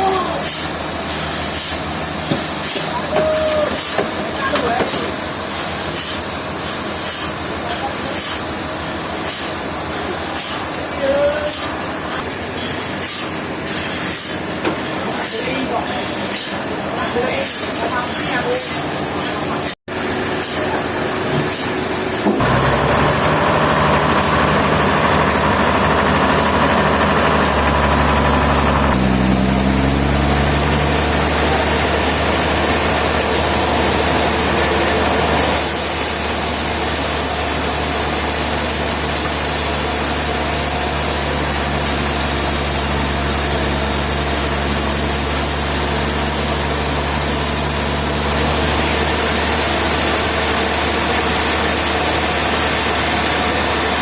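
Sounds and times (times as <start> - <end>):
heavy engine running: 0.0 - 54.0.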